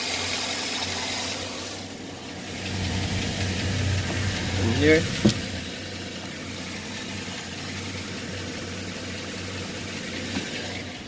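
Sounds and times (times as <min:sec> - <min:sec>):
car engine idling: 0:01.3 - 0:11.0.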